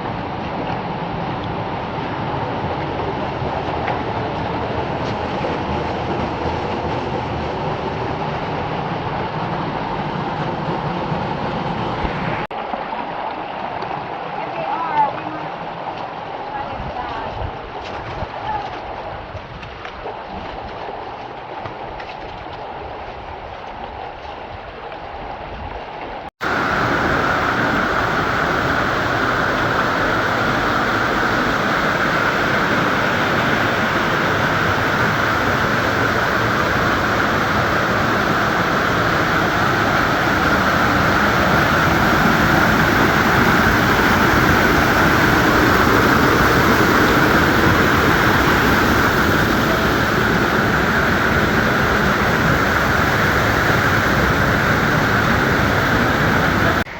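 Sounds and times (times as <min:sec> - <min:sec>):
waterfall rushing: 0:26.4 - 0:56.9.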